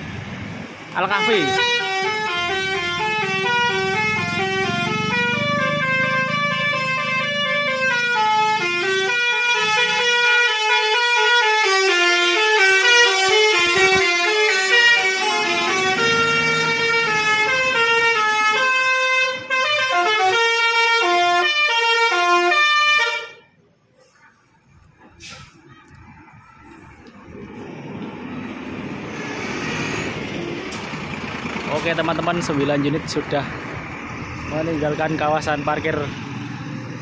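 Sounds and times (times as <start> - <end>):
bus engine rumbling: 0.0 - 37.0
multi-tone musical bus horn: 1.1 - 23.6.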